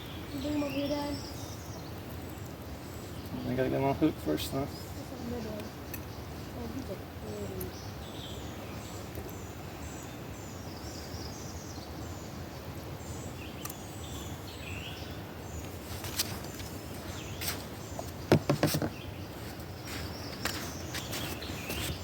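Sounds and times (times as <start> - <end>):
outdoor background noise: 0.0 - 22.0
small birds chirping: 0.0 - 22.0
sharp clicks and knocks: 18.3 - 19.0.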